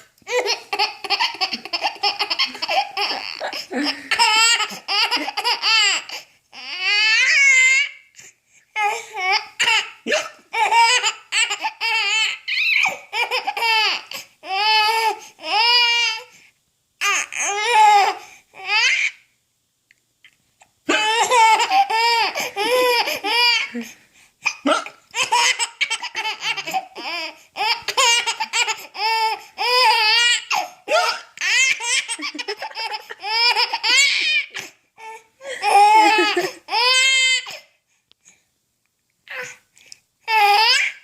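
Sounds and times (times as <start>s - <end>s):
baby laughing: 0.3s - 7.8s, 9.2s - 16.0s, 20.9s - 23.9s, 24.5s - 34.7s, 35.5s - 37.6s
baby hiccups: 10.1s - 10.4s, 24.5s - 25.0s.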